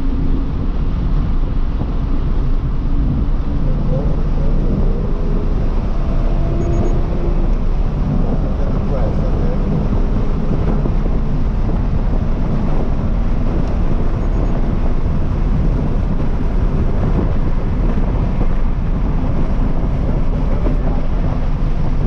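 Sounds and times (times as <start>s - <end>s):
car engine drone: 0.0s - 22.0s
road and wind roar: 0.0s - 22.0s.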